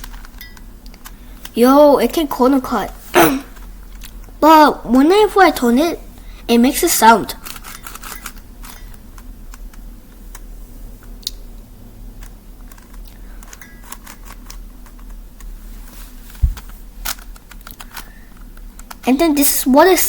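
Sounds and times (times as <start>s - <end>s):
puzzle cube plastic clicks: 7.4s - 10.5s, 12.2s - 15.2s, 17.0s - 19.1s
dull thump: 16.4s - 16.7s.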